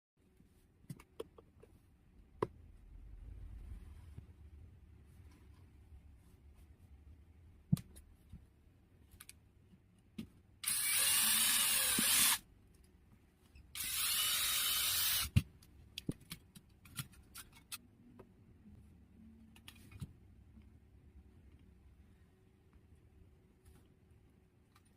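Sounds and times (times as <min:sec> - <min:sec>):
electric screwdriver whirring: 0:10.6 - 0:12.4, 0:13.8 - 0:15.3.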